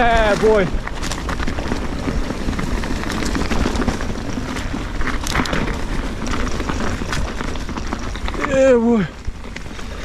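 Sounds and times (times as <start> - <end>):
bike knocks and rattles: 0.0 - 10.0
tyre and trail noise: 0.0 - 10.0
wind buffeting microphone: 0.0 - 10.0.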